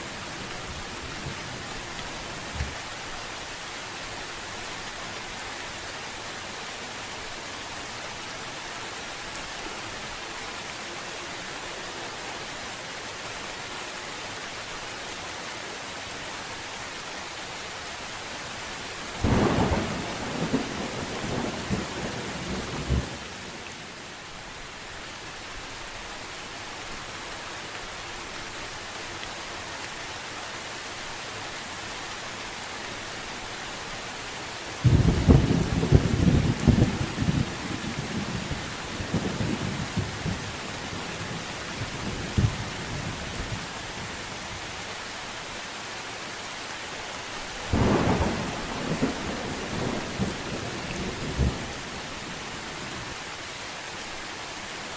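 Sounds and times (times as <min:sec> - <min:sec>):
steady rain: 0:00.0 - 0:54.9
thunder rumbling: 0:19.2 - 0:23.2, 0:34.8 - 0:40.5, 0:47.7 - 0:51.8.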